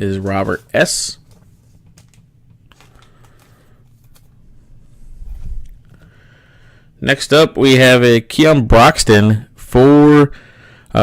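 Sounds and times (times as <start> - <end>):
trading cards clicking and rustling: 0.1 - 4.4.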